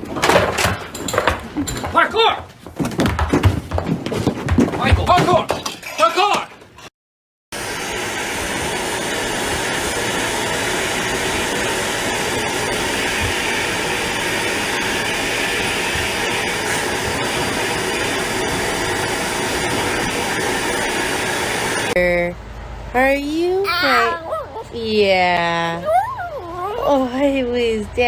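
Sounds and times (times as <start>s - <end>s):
motor or rushing air noise: 7.6s - 22.7s.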